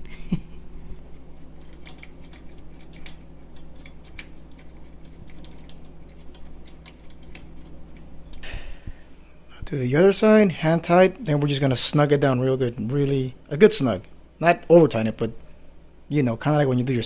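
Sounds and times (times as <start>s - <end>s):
metallic clicks of nuts and washers: 1.1s - 8.0s.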